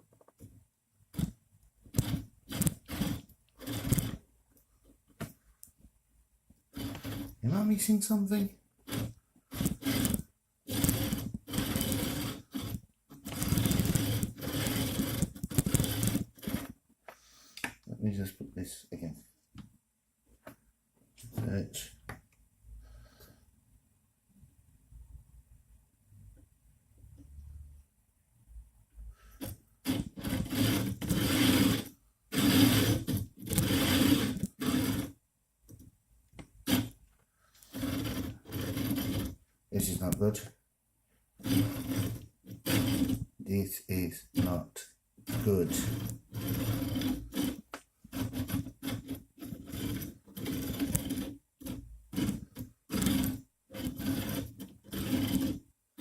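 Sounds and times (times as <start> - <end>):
bearings rattling and grinding: 1.1 - 4.2, 6.7 - 16.8, 29.4 - 35.2, 37.6 - 40.5, 41.4 - 43.3, 44.1 - 55.7.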